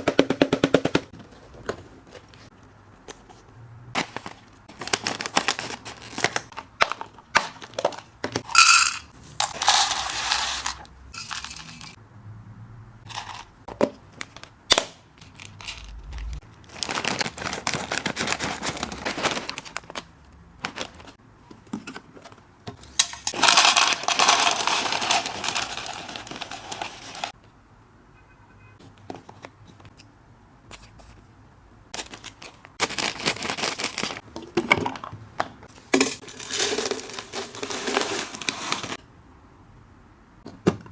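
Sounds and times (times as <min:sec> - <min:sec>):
snacks pouring and rustling: 0:04.0 - 0:06.5, 0:07.4 - 0:12.0, 0:15.2 - 0:21.2, 0:23.3 - 0:27.4, 0:32.0 - 0:34.2, 0:36.0 - 0:39.0
dry snacks clicking and rattling: 0:04.7 - 0:12.0, 0:15.2 - 0:21.2, 0:23.0 - 0:27.3, 0:32.0 - 0:34.2, 0:36.0 - 0:39.0.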